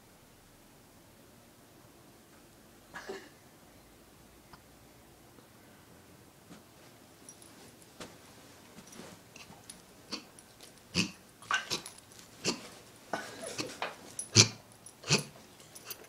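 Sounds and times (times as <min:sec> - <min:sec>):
dog hiccuping: 0:10.9 - 0:15.4.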